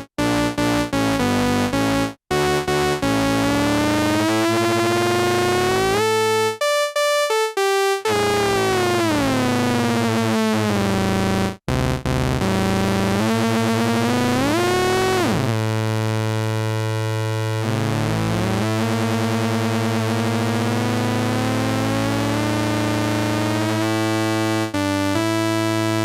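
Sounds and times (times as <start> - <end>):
buzzy synthesizer with pitch glides: 0.0 - 6.6, 8.0 - 26.0.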